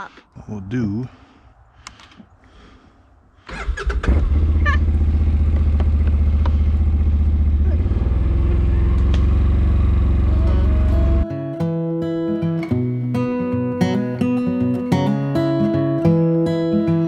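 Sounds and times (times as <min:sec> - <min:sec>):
vehicle engine cranking: 0:03.5 - 0:07.4
vehicle engine idling: 0:03.6 - 0:11.2.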